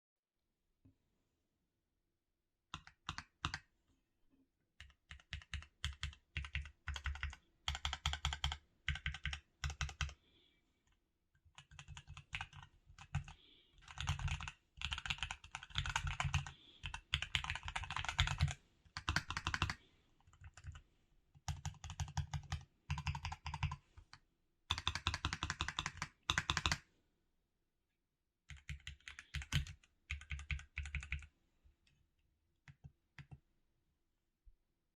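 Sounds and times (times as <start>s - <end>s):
mechanical keyboard typing: 2.8s - 3.6s, 4.8s - 10.2s, 11.6s - 20.8s, 21.5s - 23.8s, 24.7s - 26.8s, 28.5s - 31.3s.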